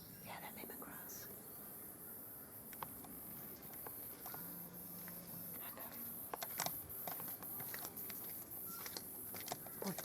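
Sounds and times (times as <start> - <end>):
insects chirring: 0.3 - 10.0
dog chewing leaves: 5.6 - 10.0.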